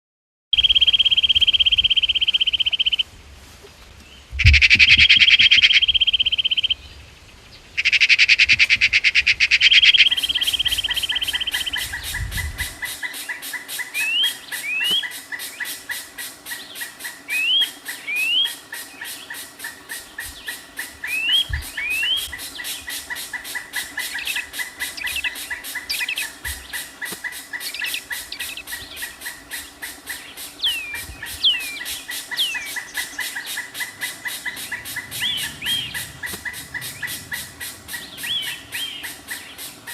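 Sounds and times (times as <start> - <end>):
bird rapid high trill: 0.6 - 3.0, 7.8 - 39.9
rising whistled bird notes: 0.6 - 3.0, 9.5 - 15.8, 16.6 - 19.2, 21.1 - 23.0, 30.2 - 39.6
pulsing chorus: 32.6 - 39.7.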